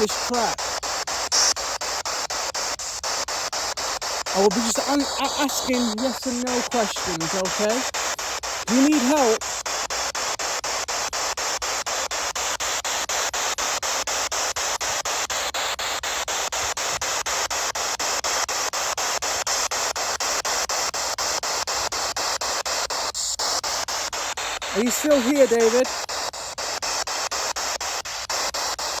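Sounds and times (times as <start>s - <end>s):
chopped radio static hiss: 0.0s - 29.0s.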